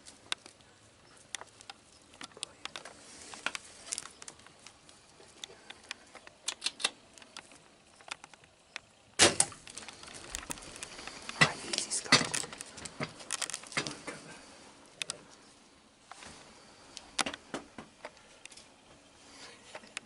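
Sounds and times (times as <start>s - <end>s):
rustling: 0.0s - 20.0s
small clicks: 1.2s - 14.2s.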